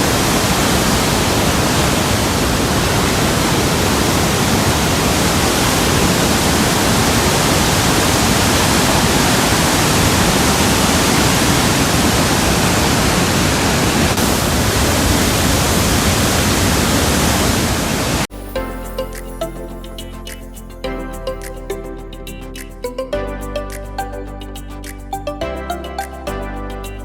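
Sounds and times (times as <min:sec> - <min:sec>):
waterfall rushing: 0:00.0 - 0:18.3
soft music: 0:18.3 - 0:27.0.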